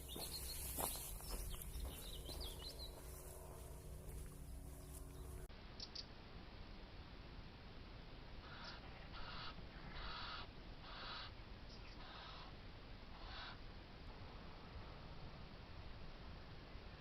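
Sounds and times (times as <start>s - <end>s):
small birds chirping: 0.0s - 6.1s, 8.4s - 12.5s, 13.1s - 13.6s
steady low hum: 0.0s - 17.0s
recording hiss: 5.5s - 17.0s.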